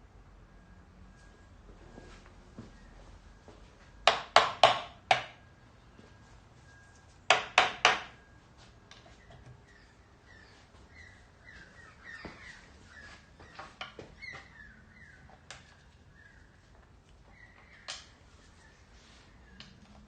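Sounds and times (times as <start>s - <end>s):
small birds chirping: 8.2s - 20.0s.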